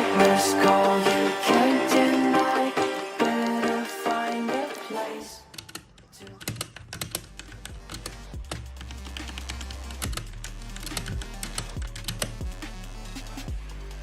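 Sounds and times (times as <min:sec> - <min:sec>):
background music with low bass: 0:00.0 - 0:04.8, 0:07.1 - 0:14.0
mechanical keyboard typing: 0:05.4 - 0:12.3.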